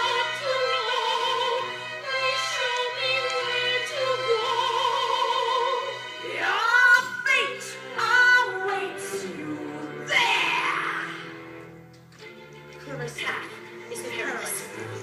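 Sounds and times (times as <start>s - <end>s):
operatic singing: 0.0s - 11.7s.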